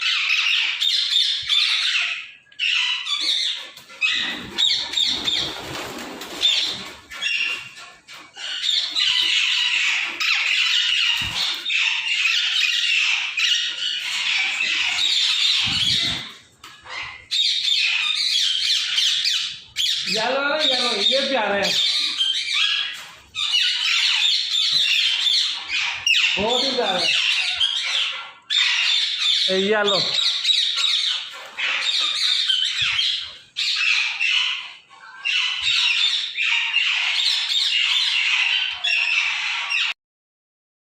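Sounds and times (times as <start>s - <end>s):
parrots squawking and chattering: 0.0s - 40.0s.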